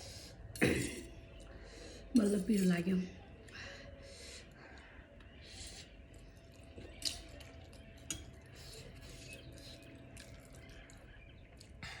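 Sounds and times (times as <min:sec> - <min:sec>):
chewing noodles: 0:04.4 - 0:12.0.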